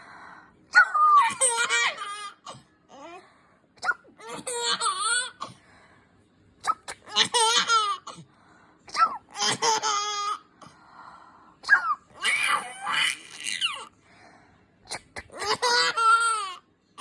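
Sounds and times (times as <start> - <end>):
baby laughing: 4.2 - 5.5, 7.0 - 8.2, 9.1 - 10.4, 15.3 - 16.6.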